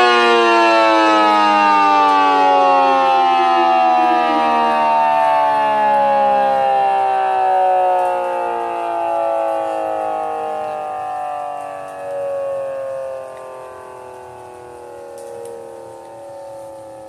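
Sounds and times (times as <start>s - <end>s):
siren winding down: 0.0s - 17.0s.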